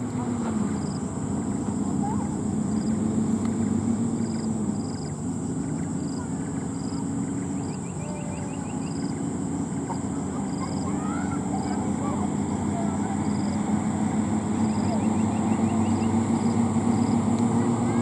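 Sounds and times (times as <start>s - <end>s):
diesel truck engine running: 0.0s - 18.0s
high insect drone: 0.0s - 18.0s.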